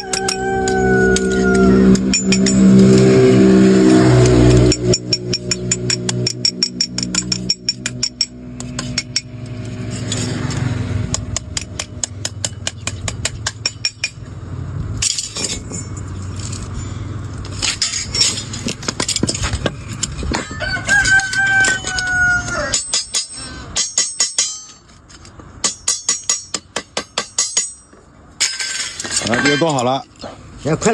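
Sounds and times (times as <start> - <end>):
hammer tapping metal blade: 0.0 - 14.2, 20.9 - 25.0.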